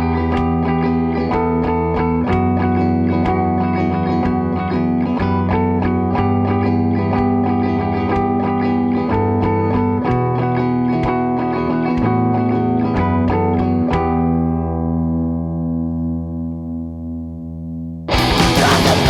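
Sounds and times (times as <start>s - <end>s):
instrumental rock band: 0.0s - 15.0s, 18.1s - 19.0s
bass line: 0.0s - 19.0s
guitars ringing chords: 0.0s - 19.0s
steady drum beat: 18.1s - 19.0s.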